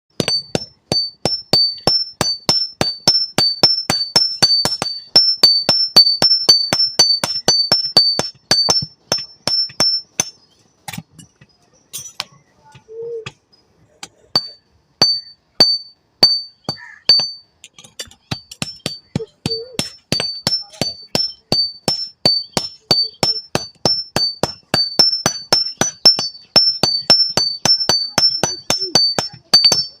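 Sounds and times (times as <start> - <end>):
hammer striking metal on anvil: 0.2 - 11.0, 14.1 - 30.0.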